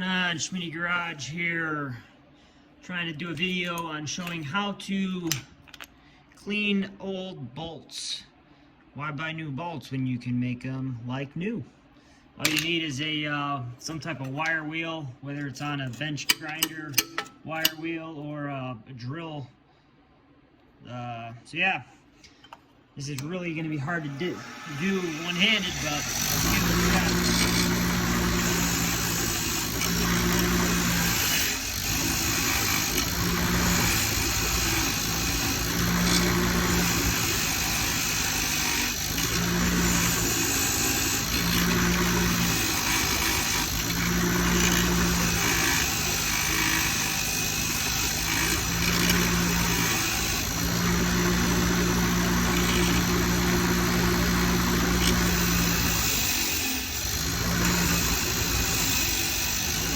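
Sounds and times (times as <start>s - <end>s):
wire wheel brushing metal: 24.1s - 59.9s.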